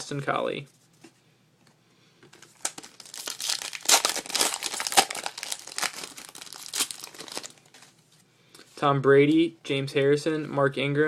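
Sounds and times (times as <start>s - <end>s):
foil wrapper crinkling and tearing: 2.4s - 7.9s.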